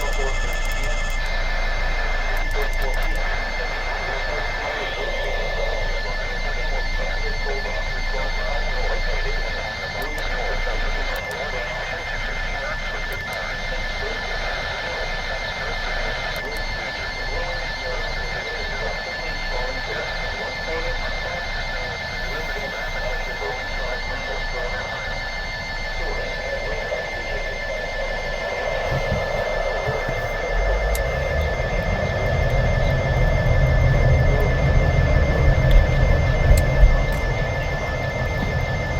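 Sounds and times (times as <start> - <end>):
radio static hiss and crackle: 0.0 - 38.9.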